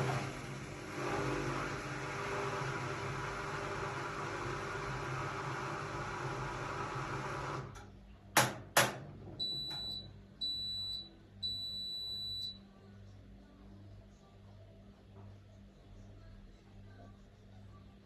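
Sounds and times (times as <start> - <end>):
washing machine running: 0.0 - 12.4.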